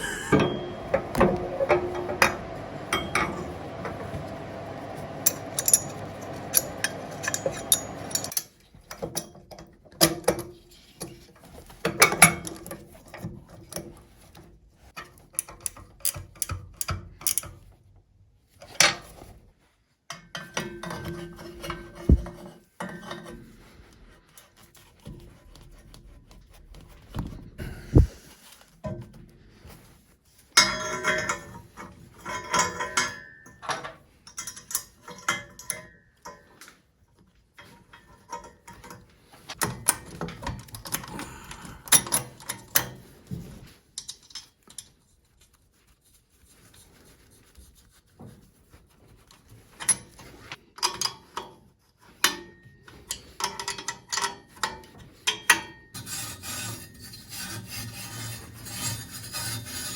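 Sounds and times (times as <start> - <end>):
metal ring: 0.0 - 3.7
metal scraping: 0.0 - 8.3.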